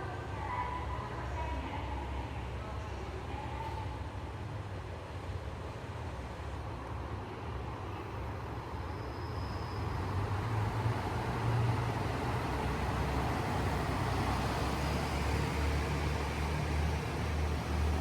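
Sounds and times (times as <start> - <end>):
vehicle engine drone: 9.8 - 18.0.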